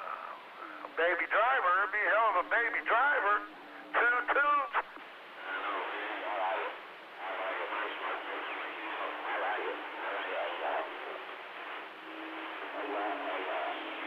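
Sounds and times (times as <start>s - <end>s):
radio static hiss: 0.0s - 14.0s
garbled voices over radio: 0.8s - 6.0s.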